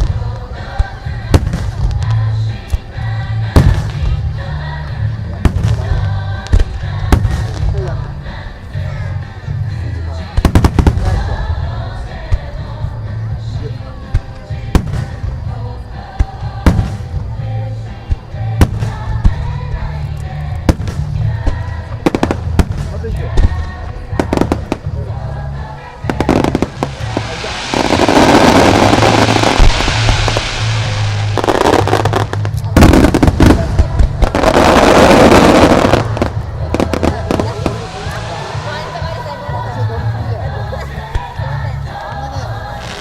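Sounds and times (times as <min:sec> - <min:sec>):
fireworks booms and cracks: 0:00.0 - 0:02.9, 0:03.5 - 0:04.4, 0:05.3 - 0:07.9, 0:10.3 - 0:11.3, 0:14.1 - 0:15.5, 0:20.6 - 0:25.0, 0:26.0 - 0:39.2
music over loudspeakers: 0:00.0 - 0:43.0.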